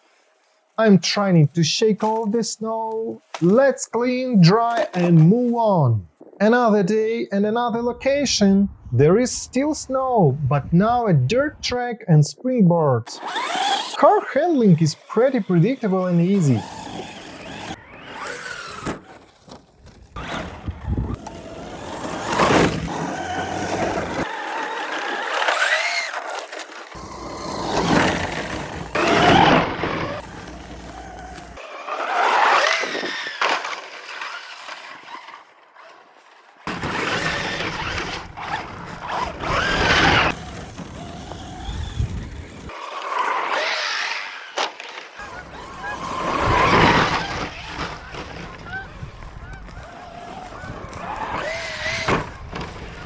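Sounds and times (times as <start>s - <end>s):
tyres on dirt and snow: 0.0s - 9.7s, 13.1s - 53.0s
electric motor whining: 13.2s - 33.6s, 36.7s - 44.6s, 45.2s - 53.0s.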